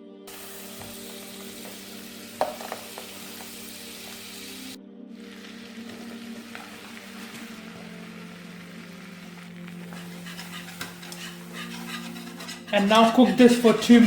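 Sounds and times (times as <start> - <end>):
butter sizzling in a pan: 0.3 - 14.0.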